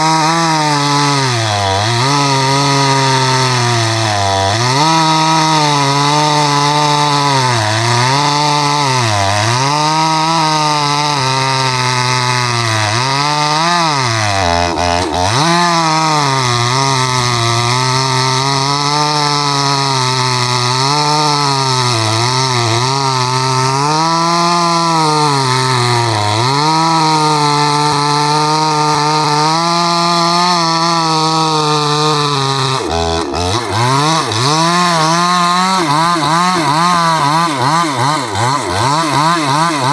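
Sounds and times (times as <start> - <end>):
chainsaw cutting log: 0.0 - 39.9.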